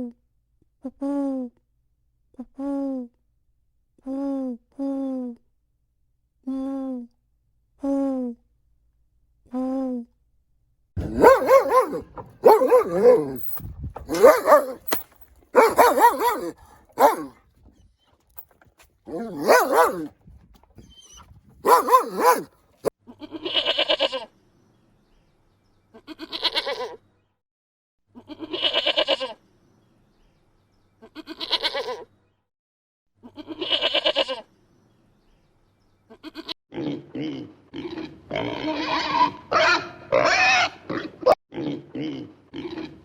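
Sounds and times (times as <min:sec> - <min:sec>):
animal bleating: 0:23.1 - 0:24.3, 0:26.0 - 0:27.0, 0:28.2 - 0:29.4, 0:31.0 - 0:32.0, 0:33.2 - 0:34.4, 0:36.1 - 0:43.0.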